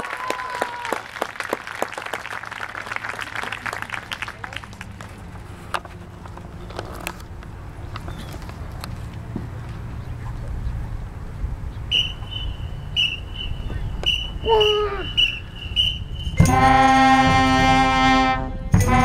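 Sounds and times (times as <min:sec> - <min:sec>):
pulsing high tone: 0:11.9 - 0:17.4
marching band chord: 0:15.2 - 0:19.0.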